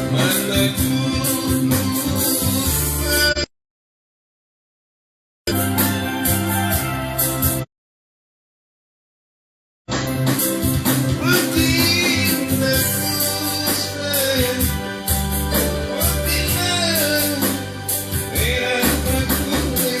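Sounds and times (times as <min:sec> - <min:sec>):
guitar and bass with steady beat: 0:00.0 - 0:03.5, 0:05.5 - 0:07.7, 0:09.9 - 0:20.0
person singing: 0:00.0 - 0:03.5, 0:11.1 - 0:20.0.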